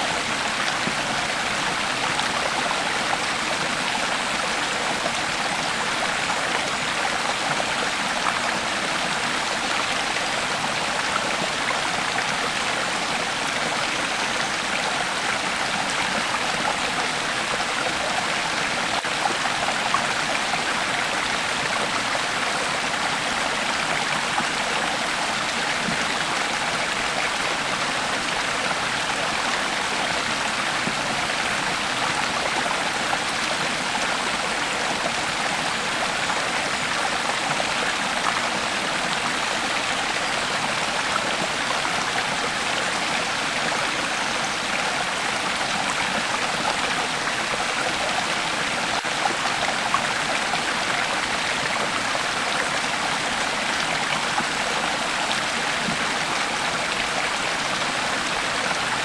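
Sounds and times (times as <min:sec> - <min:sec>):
creek water flowing over rocks: 0:00.0 - 0:59.0.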